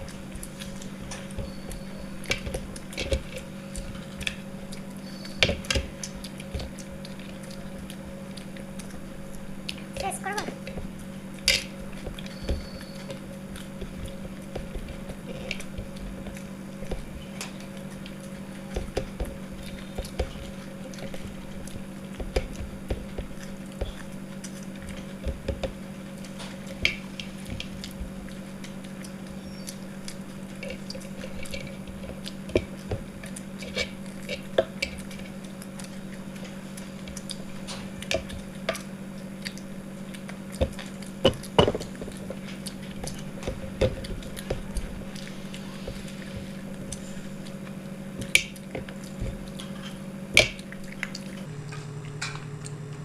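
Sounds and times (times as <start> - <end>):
chewing and mouth sounds: 0.0 - 53.0
low hum: 0.0 - 53.0
utensils clinking on dishes: 11.4 - 13.1.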